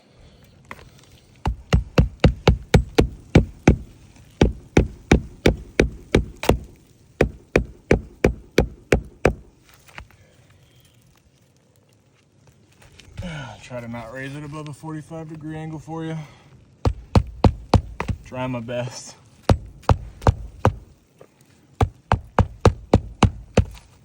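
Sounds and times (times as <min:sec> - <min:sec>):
hammer driving nails into shingle: 0:01.4 - 0:10.1, 0:16.8 - 0:18.3, 0:19.4 - 0:21.0, 0:21.8 - 0:24.0.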